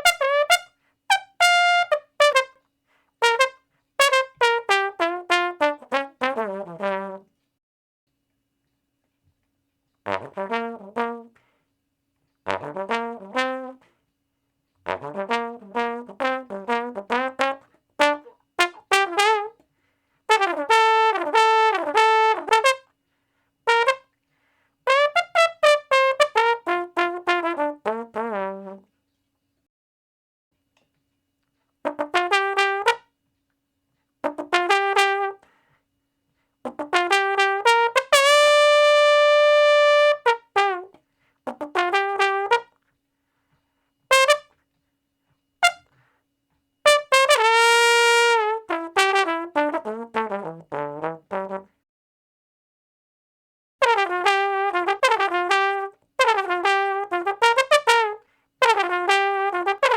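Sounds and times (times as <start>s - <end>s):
trumpet playing: 0.0s - 7.3s, 10.0s - 11.4s, 12.4s - 13.9s, 14.8s - 19.6s, 20.3s - 22.9s, 23.7s - 24.2s, 24.9s - 28.8s, 31.8s - 33.1s, 34.2s - 35.5s, 36.6s - 42.8s, 44.1s - 44.6s, 45.6s - 46.0s, 46.8s - 51.7s, 53.8s - 59.9s.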